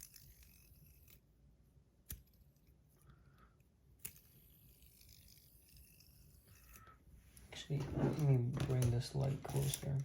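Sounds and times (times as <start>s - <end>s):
fidget spinner clicks: 0.0s - 1.2s.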